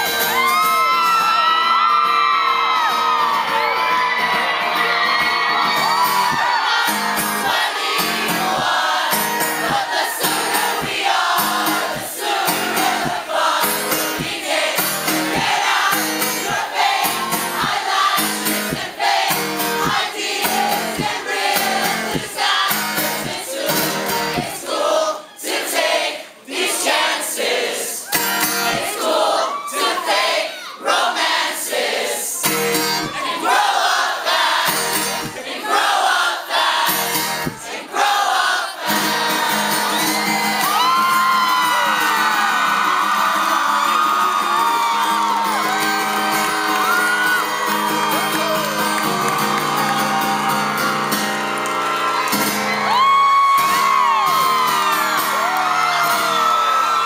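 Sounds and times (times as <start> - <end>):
choir-like singing voices: 4.2 - 51.1
steady rhythmic beat: 5.8 - 24.7, 34.7 - 35.6.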